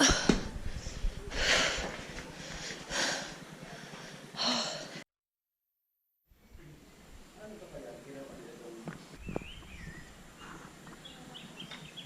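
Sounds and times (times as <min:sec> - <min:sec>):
person breathing hard: 0:00.0 - 0:05.0.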